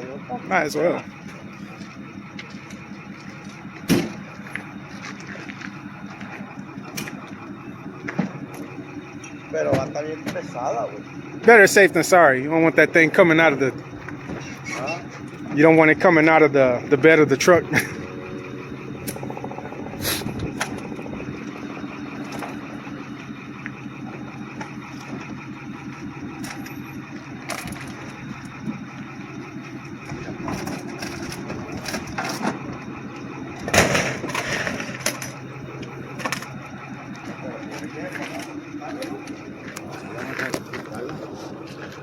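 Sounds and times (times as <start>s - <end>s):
truck engine idling: 0.0s - 42.0s
knocks and clanks: 1.3s - 10.6s, 13.0s - 15.7s, 30.0s - 41.2s.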